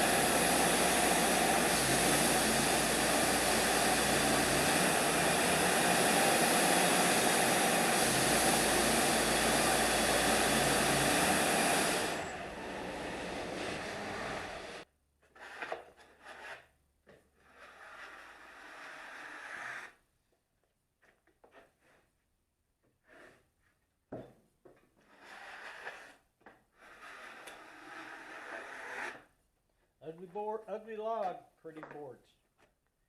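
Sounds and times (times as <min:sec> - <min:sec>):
sawmill running: 0:00.0 - 0:14.8.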